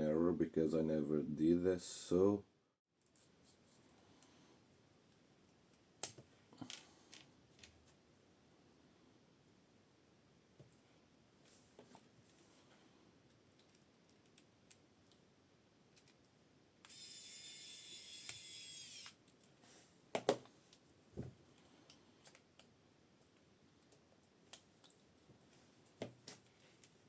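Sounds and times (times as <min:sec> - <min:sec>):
small electric motor whining: 0:16.9 - 0:19.2.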